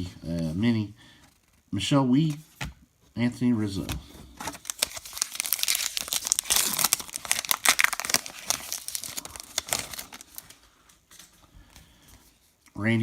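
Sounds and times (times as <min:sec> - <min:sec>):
wrapper tearing and crinkling: 0:04.5 - 0:10.6.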